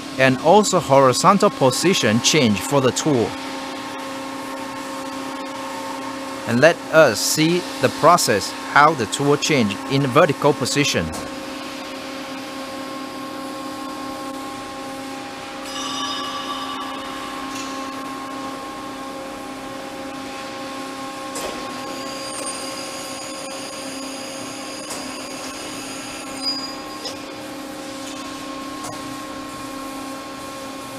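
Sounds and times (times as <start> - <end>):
machine electric hum: 0.0 - 30.9
thin high whine: 15.2 - 19.9.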